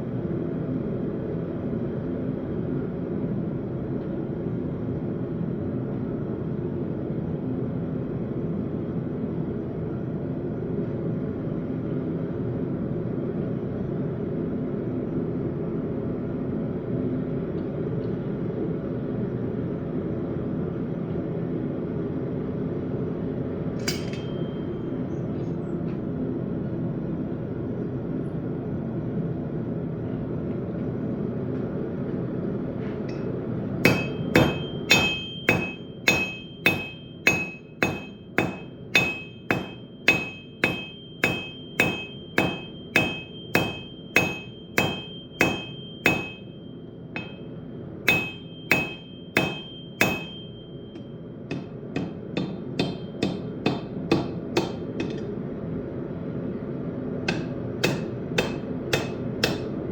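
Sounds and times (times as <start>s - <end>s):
hammer ringing on anvil: 23.8s - 25.0s, 33.1s - 55.3s, 57.3s - 59.8s.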